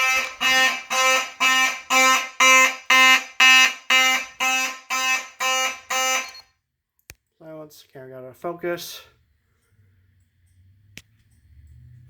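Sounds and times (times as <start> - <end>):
fire alarm horn blasts: 0.0 - 6.5.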